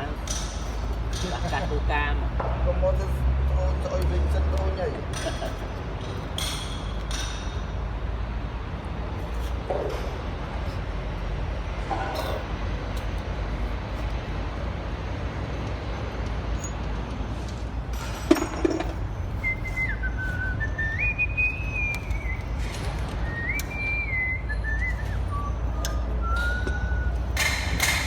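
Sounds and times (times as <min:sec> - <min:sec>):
person whistling a tune: 0:19.4 - 0:27.6.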